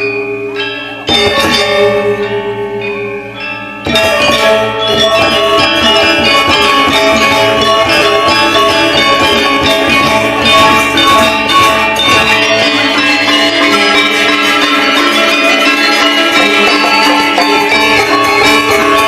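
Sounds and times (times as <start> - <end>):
gamelan ensemble playing: 0.0 - 19.0.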